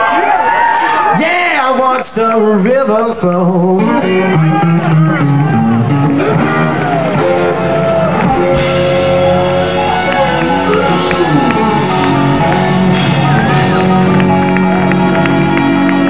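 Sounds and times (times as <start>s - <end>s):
live blues-rock band: 2.2s - 16.0s
bending guitar notes: 3.6s - 16.0s.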